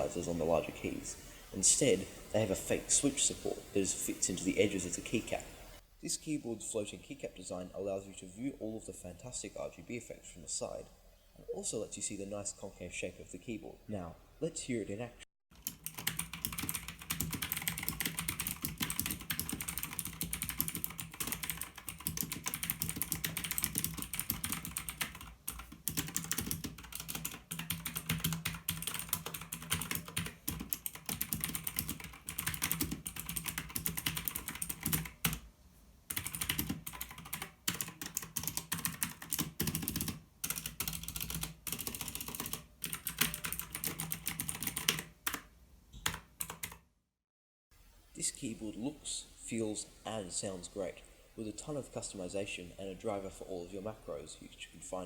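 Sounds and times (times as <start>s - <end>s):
mechanical keyboard typing: 15.5s - 35.4s, 36.1s - 46.8s.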